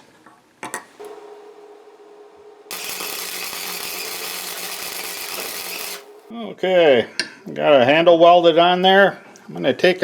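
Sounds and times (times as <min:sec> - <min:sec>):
welding arc hissing crackle: 0:00.9 - 0:06.3.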